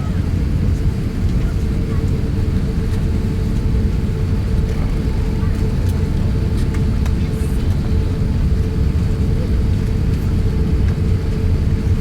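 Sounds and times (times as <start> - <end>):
airliner cabin low rumble: 0.0 - 12.0.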